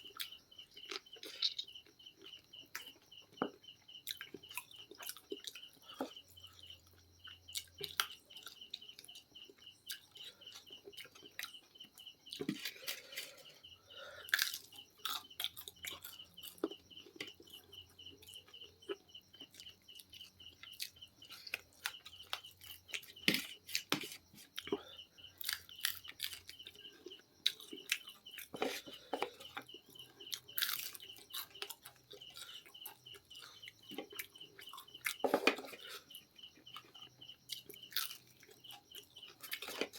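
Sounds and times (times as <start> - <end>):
chewing and crunching food: 0.0 - 39.9
rapid high-pitched chirping: 24.6 - 39.9.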